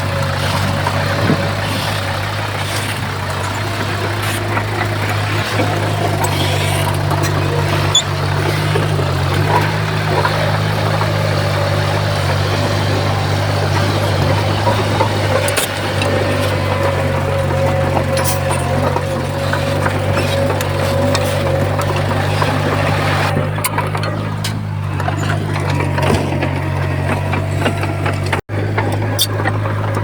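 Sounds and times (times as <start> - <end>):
diesel engine running steadily: 0.0 - 30.0.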